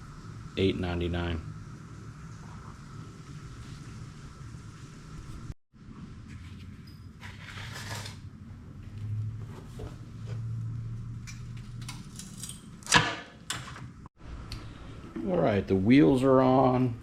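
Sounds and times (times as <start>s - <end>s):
tools being handled: 11.3s - 13.8s.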